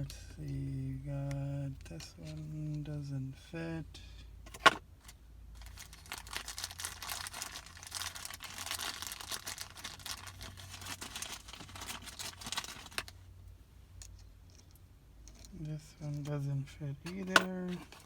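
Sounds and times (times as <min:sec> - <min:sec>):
packaging crinkling and rustling: 0:05.6 - 0:13.2, 0:17.1 - 0:18.0.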